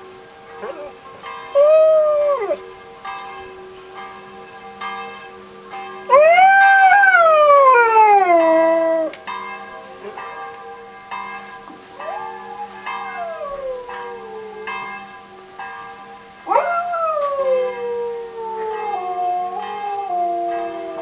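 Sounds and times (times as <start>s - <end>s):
church bells ringing: 0.0s - 21.0s
dog howling: 0.6s - 2.7s, 6.1s - 9.2s, 12.0s - 15.2s, 16.4s - 21.0s.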